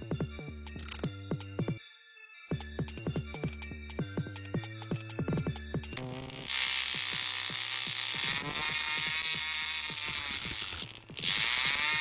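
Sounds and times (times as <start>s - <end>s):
music: 0.0s - 12.0s
small motor buzzing and whining: 6.0s - 12.0s.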